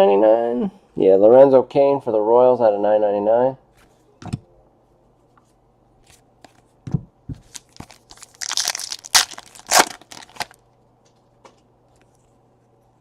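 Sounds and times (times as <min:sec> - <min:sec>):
foil wrapper tearing and crinkling: 0:07.5 - 0:10.6.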